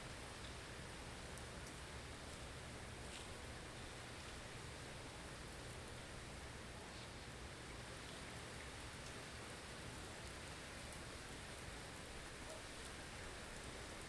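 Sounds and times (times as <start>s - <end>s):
faint ticks: 1.3s - 2.4s, 8.9s - 9.2s, 10.0s - 13.0s.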